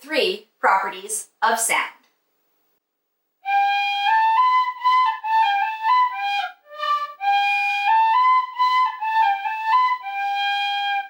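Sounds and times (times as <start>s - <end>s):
tin whistle melody: 3.4s - 11.0s.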